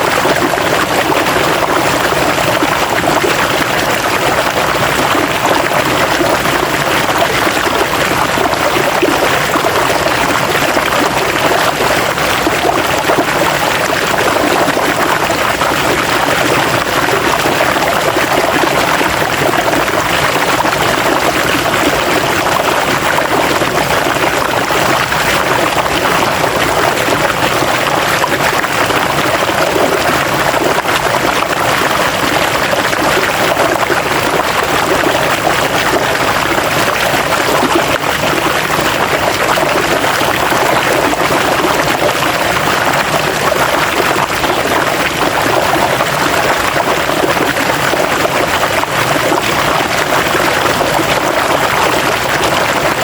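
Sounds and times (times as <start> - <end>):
river water flowing over stones: 0.0 - 53.0.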